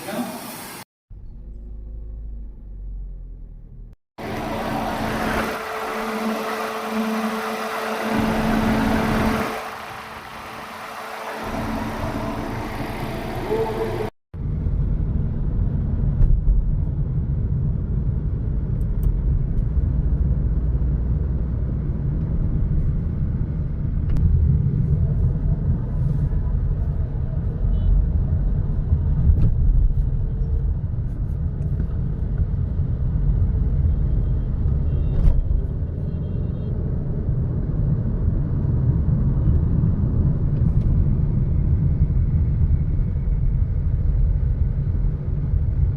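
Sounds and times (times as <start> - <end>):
engine and gearbox running: 1.1 - 14.1
steady low rumble: 1.1 - 34.4, 37.1 - 45.9
steady mechanical tone: 4.2 - 14.1.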